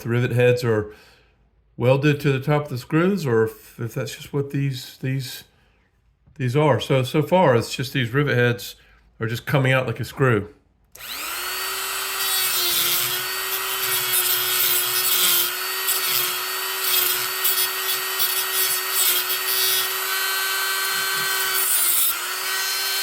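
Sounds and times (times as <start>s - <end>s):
rotary tool grinding metal: 11.0s - 23.0s.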